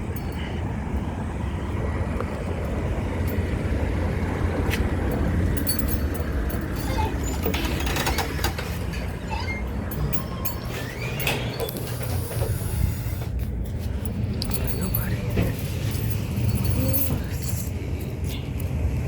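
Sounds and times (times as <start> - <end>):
motor vehicle rumble: 0.0 - 19.0.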